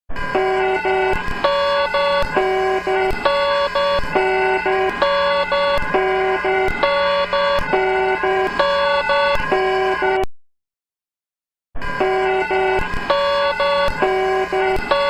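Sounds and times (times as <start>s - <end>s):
emergency alert alarm tone: 0.1s - 10.3s, 11.8s - 15.0s.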